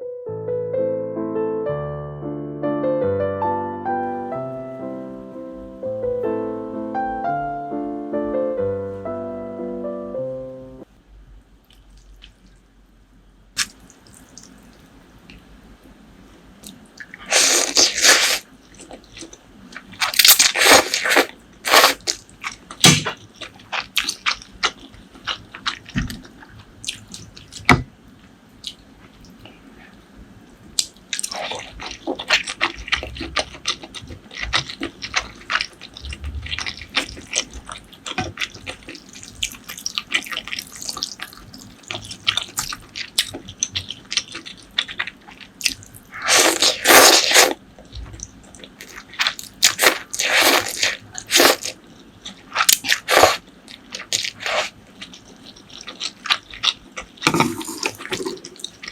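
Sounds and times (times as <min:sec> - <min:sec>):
wet mouth eating sounds: 0:30.8 - 0:58.9.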